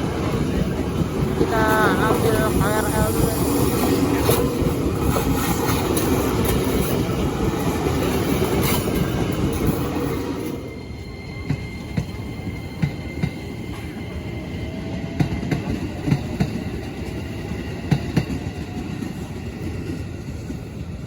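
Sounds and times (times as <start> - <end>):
train rumbling past: 0.0 - 21.0
wheels clacking on rail joints: 0.1 - 10.4.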